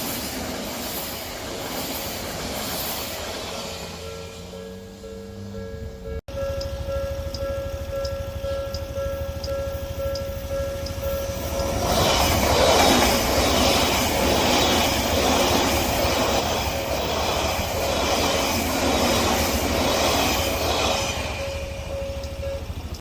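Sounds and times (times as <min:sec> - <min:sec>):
level crossing warning bell: 0:03.8 - 0:13.4, 0:19.7 - 0:23.0
train wheels clattering over rail joints: 0:11.3 - 0:21.5.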